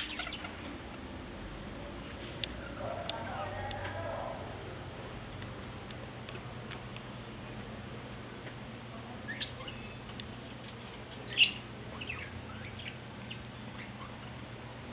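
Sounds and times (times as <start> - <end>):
small birds chirping: 0.0 - 0.7, 9.2 - 14.7.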